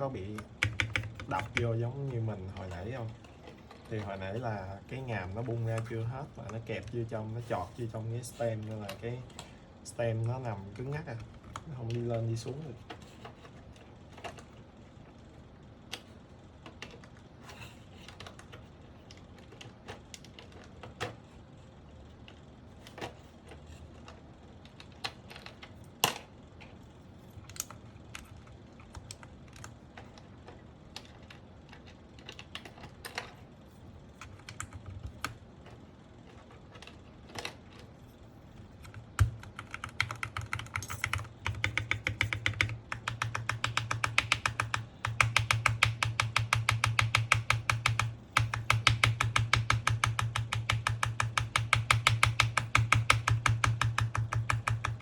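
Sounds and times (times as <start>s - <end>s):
mechanical keyboard key presses: 0.2s - 1.9s, 38.8s - 55.0s.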